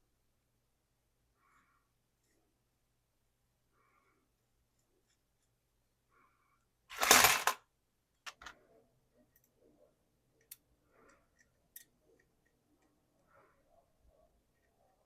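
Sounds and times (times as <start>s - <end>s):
nuts and bolts rattling in a bin: 6.9s - 7.6s
metallic clicks of handled pieces: 10.4s - 13.0s.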